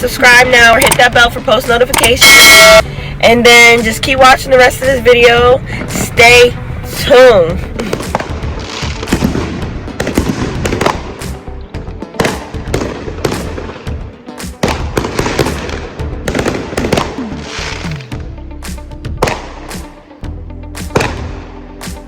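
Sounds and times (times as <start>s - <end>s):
fireworks bangs and crackles: 7.8s - 11.4s, 12.1s - 18.2s, 19.2s - 19.7s, 20.9s - 21.5s.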